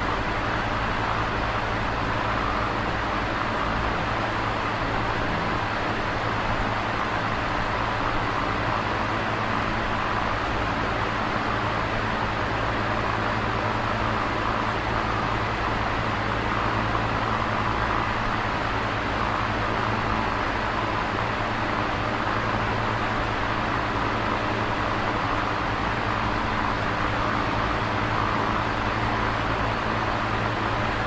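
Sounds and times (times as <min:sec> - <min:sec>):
electric fan running: 0:00.0 - 0:31.0.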